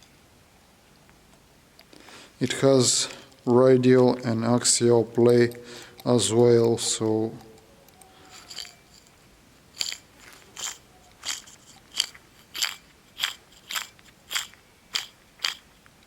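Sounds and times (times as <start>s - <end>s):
gritty scraping rumble of spinning shaft: 8.3s - 15.6s.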